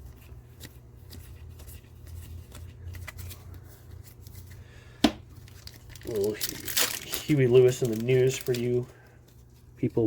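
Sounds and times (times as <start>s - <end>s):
trading cards being flipped: 0.0s - 4.6s.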